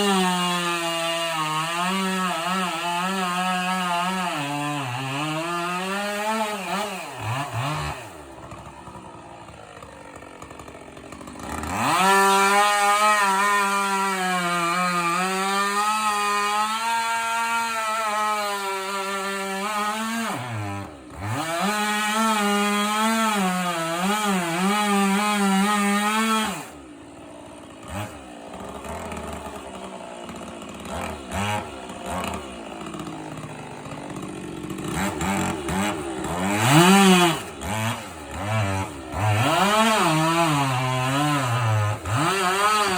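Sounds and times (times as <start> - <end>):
chainsaw cutting wood: 0.0 - 42.9.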